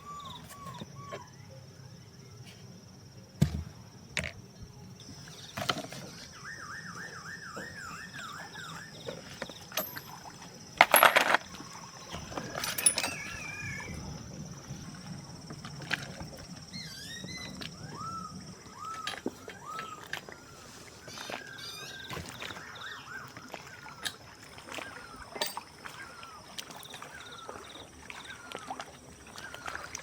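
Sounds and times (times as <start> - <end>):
high insect drone: 3.9 - 19.9
bird warbling whistle: 6.3 - 9.1, 16.8 - 23.3
sharp knocks and clinks: 9.7 - 11.5, 12.1 - 13.6, 25.4 - 25.7.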